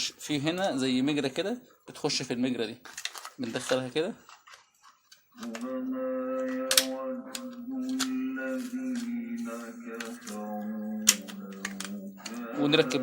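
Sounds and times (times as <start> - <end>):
person chanting long notes: 5.4 - 13.0.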